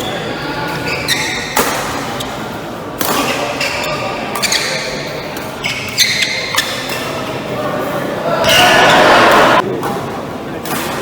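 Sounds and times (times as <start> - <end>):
rackets hitting shuttlecock: 0.6 - 2.4, 3.0 - 7.3.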